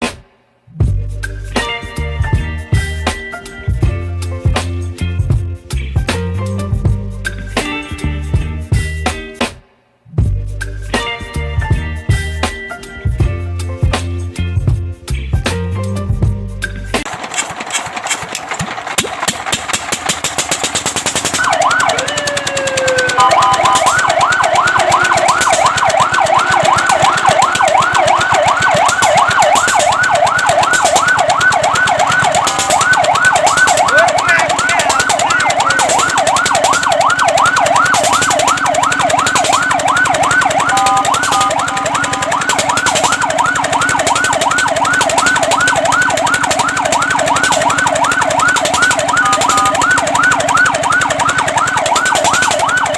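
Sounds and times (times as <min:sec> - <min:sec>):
fire truck siren yelping: 0:17.0 - 0:52.9.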